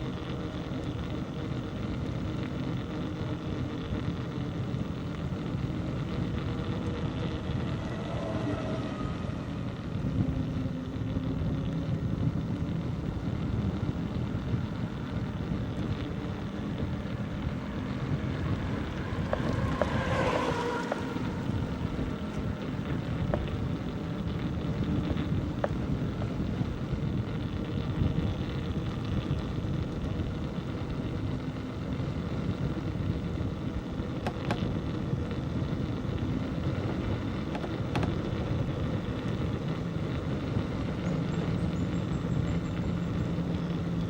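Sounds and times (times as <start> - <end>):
road noise: 0.0 - 44.0
wind on microphone: 4.1 - 44.0.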